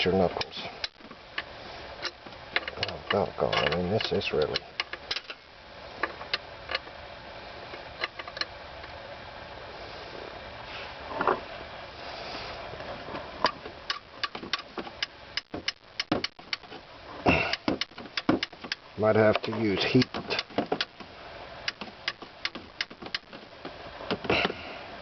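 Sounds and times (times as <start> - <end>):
hand tools clicking on a nut: 0.4 - 5.4, 13.4 - 21.0, 21.6 - 24.6
sharp metal taps: 13.9 - 16.7, 17.4 - 21.0, 21.7 - 23.4.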